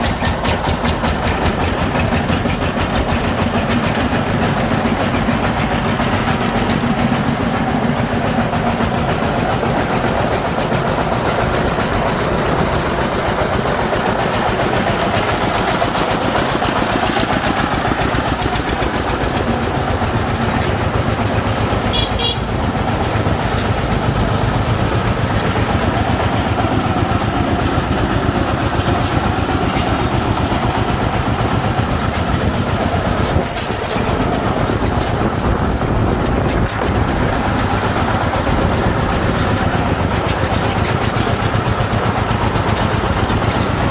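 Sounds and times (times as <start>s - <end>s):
diesel engine chugging: 0.0s - 43.9s.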